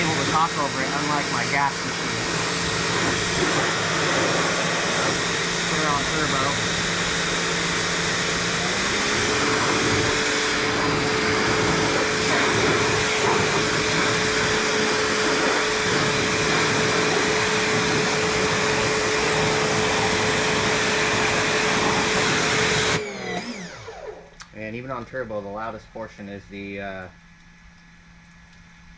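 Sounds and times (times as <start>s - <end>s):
water jet hissing: 0.0s - 22.8s
pressure washer motor whine: 0.0s - 26.4s.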